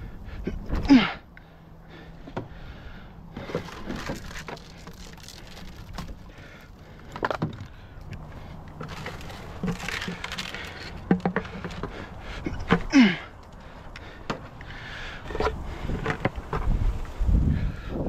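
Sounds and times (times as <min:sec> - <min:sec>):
dry reeds rustling and crunching: 0:03.4 - 0:11.9
reeds snapping: 0:03.6 - 0:06.7, 0:07.6 - 0:11.8.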